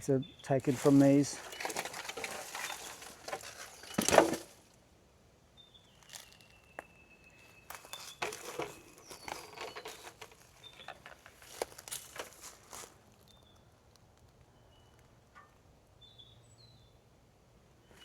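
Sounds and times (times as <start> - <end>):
footsteps rustling in dry bush: 0.5 - 4.7, 5.9 - 14.4.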